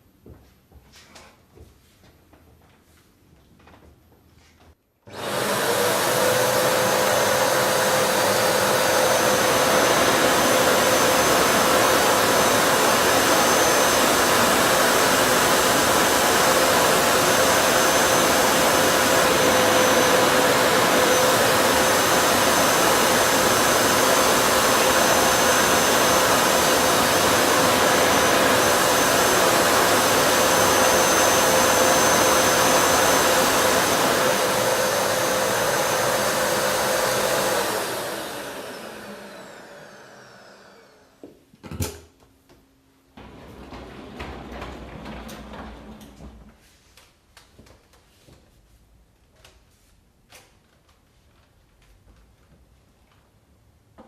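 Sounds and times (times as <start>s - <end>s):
vacuum cleaner motor whine: 5.0s - 41.3s, 43.2s - 46.6s.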